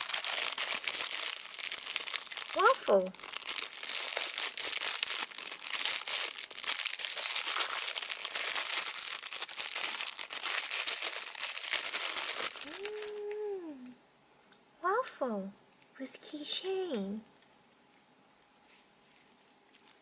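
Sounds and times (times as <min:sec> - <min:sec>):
plastic packaging crinkling and tearing: 0:00.0 - 0:13.4.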